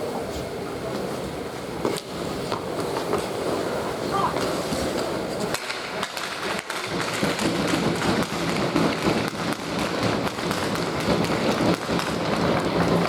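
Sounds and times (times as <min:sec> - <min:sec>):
hockey sticks and pucks knocking: 0:01.8 - 0:03.6, 0:04.3 - 0:13.0.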